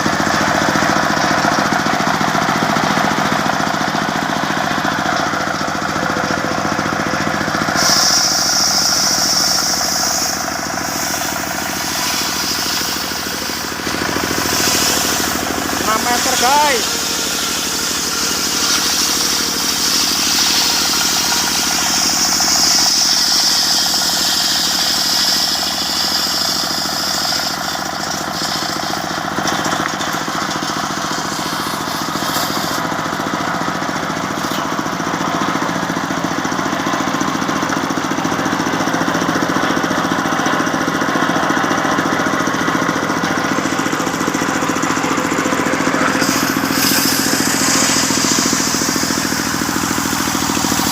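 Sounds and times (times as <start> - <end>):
circular sawmill sawing log: 0.0 - 50.9
engine drone: 0.0 - 50.9
high whine: 43.5 - 50.9.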